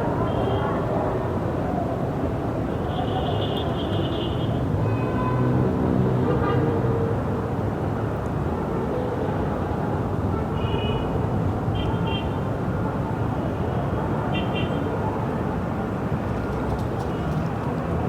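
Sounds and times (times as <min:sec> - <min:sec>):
distant traffic rumble: 0:15.8 - 0:18.0.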